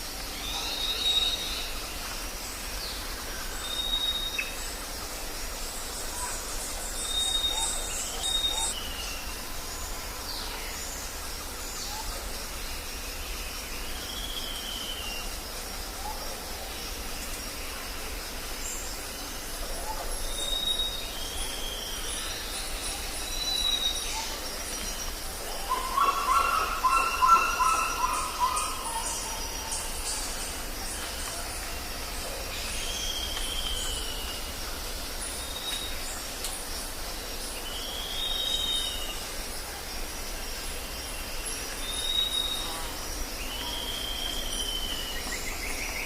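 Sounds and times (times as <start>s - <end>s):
background hiss: 0.0s - 46.0s
bird calls and whistles: 43.5s - 46.0s.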